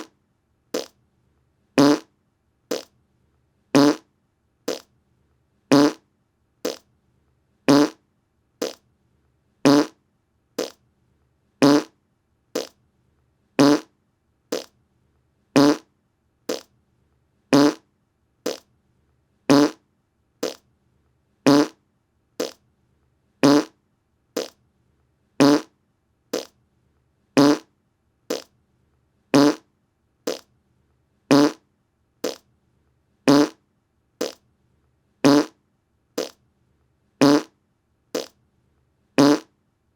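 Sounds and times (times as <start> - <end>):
fart sounds: 0.8 - 1.0, 1.8 - 2.1, 2.7 - 2.9, 3.8 - 4.1, 4.7 - 4.9, 5.7 - 6.0, 6.6 - 6.9, 7.7 - 8.0, 8.6 - 8.8, 9.7 - 10.0, 10.6 - 10.8, 11.6 - 12.0, 12.6 - 12.8, 13.6 - 13.9, 14.5 - 14.7, 15.6 - 15.9, 16.5 - 16.7, 17.5 - 17.8, 18.5 - 18.7, 19.5 - 19.8, 20.4 - 20.6, 21.5 - 21.8, 22.4 - 22.6, 23.4 - 23.8, 24.4 - 24.6, 25.4 - 25.7, 26.4 - 26.6, 27.4 - 27.7, 28.3 - 28.5, 29.4 - 29.7, 30.3 - 30.5, 31.3 - 31.6, 32.2 - 32.4, 33.3 - 33.6, 34.2 - 34.4, 35.2 - 35.6, 36.2 - 36.4, 37.2 - 37.5, 38.2 - 38.4, 39.2 - 39.5.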